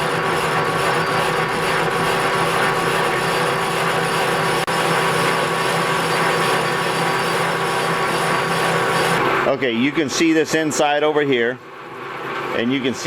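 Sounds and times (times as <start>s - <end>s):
metal lathe whining: 0.0s - 9.6s.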